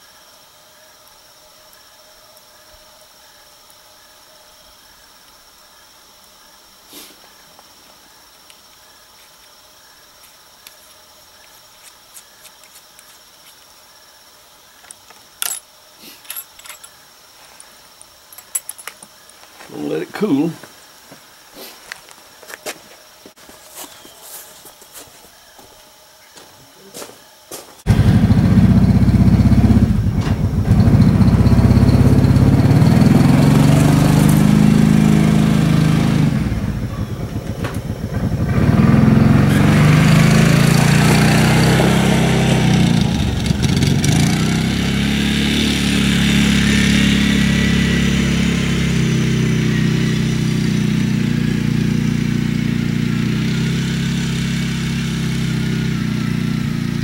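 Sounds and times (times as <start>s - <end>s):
vehicle engine starting and running: 27.9s - 57.0s.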